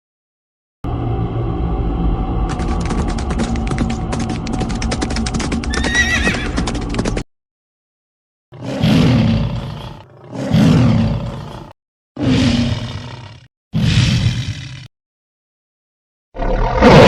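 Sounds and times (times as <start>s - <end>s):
creature roaring: 8.6s - 14.9s.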